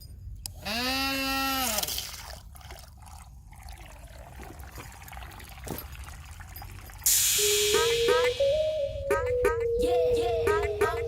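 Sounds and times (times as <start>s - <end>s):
faint trickling water: 1.8s - 7.1s.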